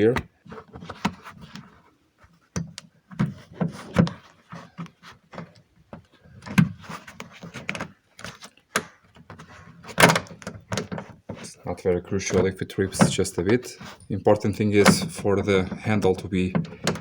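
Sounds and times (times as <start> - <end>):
tool rubbing on plastic: 10.8 - 14.1.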